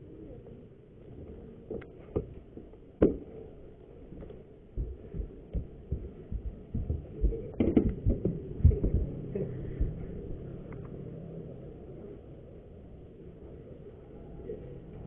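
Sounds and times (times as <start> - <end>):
low thumps and knocks: 4.7 - 10.4.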